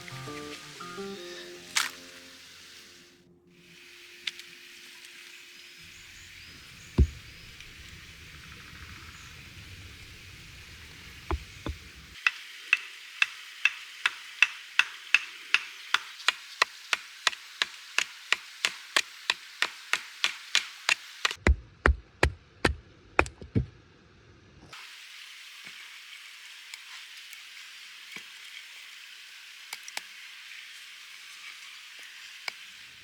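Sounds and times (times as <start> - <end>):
sharp knocks: 7.0 - 7.7, 11.3 - 11.9, 21.3 - 23.7.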